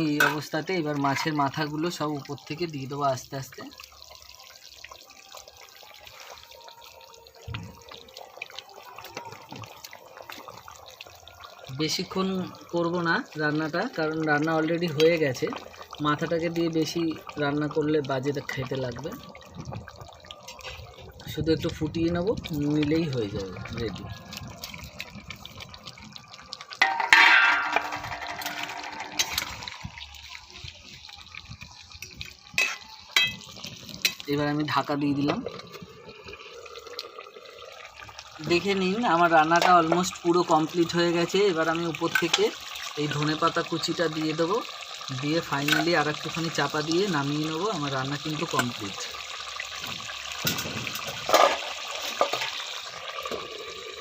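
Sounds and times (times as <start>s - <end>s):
gravy boiling in a pan: 0.0s - 54.0s
metal lid clanking on pan: 0.2s - 0.5s, 26.8s - 29.6s, 50.4s - 52.6s
utensil clattering on pan: 26.8s - 29.6s.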